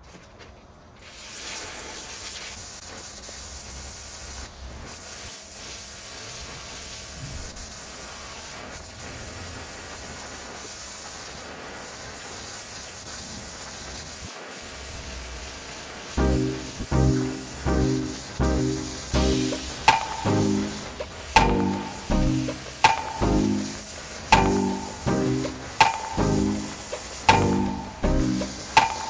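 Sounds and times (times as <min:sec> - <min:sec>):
pressure washer spraying: 0:16.2 - 0:29.0.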